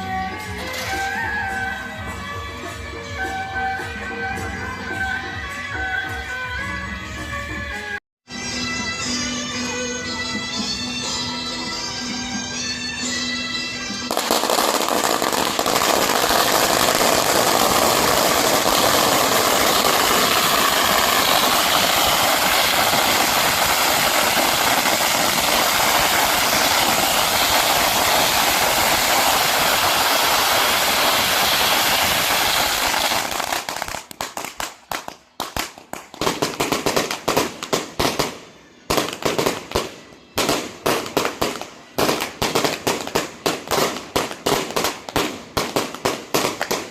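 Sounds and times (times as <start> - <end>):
firecrackers crackling and banging: 13.9 - 46.9.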